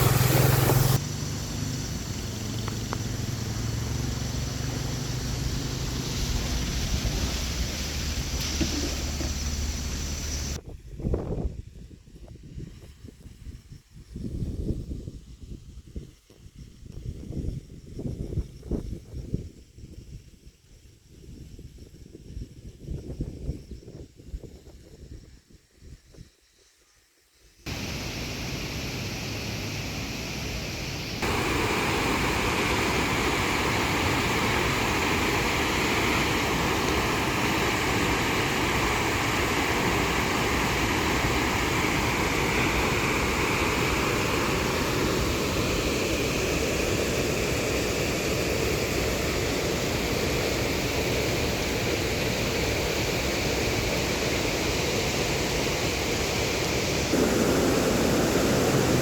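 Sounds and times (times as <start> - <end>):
floodwater rushing: 0.0 - 10.6, 27.7 - 53.2, 56.8 - 59.0.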